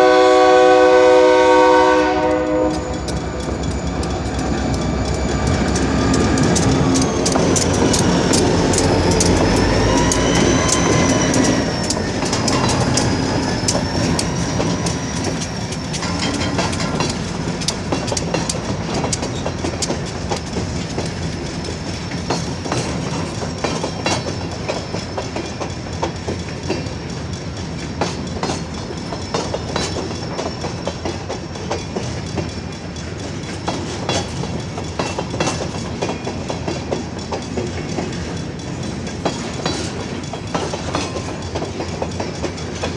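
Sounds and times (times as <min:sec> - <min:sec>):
train wheels clacking on rails: 0:00.0 - 0:42.9
high wavering wheel squeal: 0:01.5 - 0:22.7.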